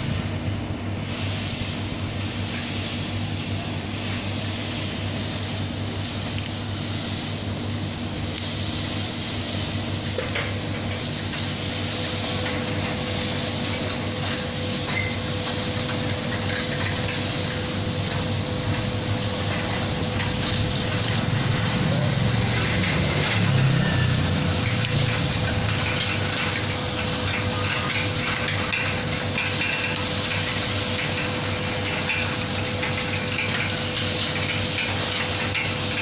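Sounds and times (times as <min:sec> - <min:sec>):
gate motor humming: 0:09.7 - 0:36.0.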